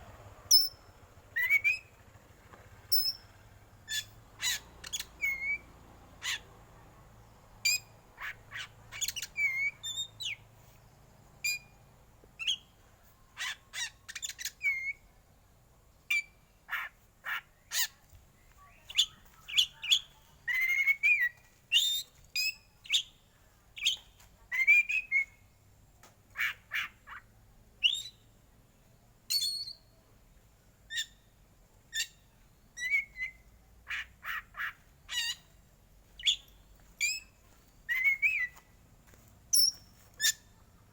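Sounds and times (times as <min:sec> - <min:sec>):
bird singing sharp notes: 0:39.5 - 0:40.6.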